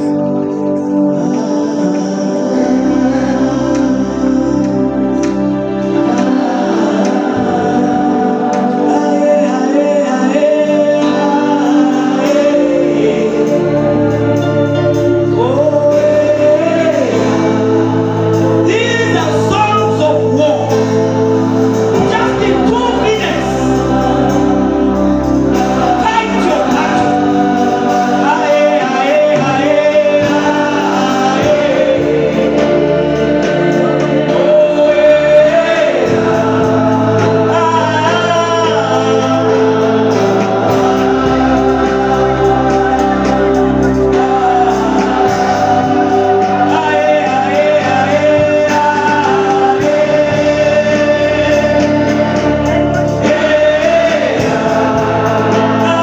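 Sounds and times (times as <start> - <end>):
gospel worship singing: 0.0 - 56.0
sustained keyboard chords: 0.0 - 56.0.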